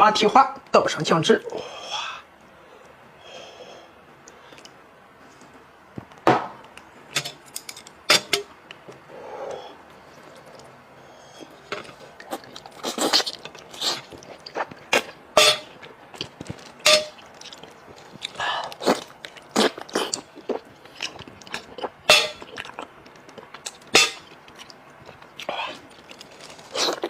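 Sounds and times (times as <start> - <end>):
wet chewing and lip-smacking: 10.0 - 16.6, 17.2 - 27.0.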